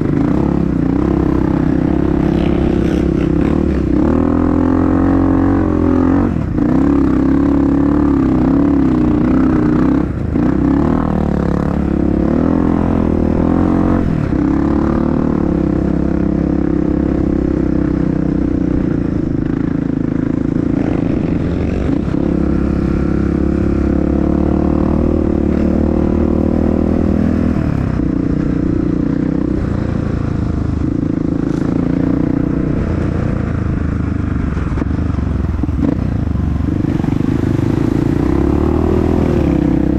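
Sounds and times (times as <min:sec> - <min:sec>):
dirt bike engine revving: 0:00.0 - 0:17.3, 0:18.6 - 0:28.0, 0:35.7 - 0:39.9.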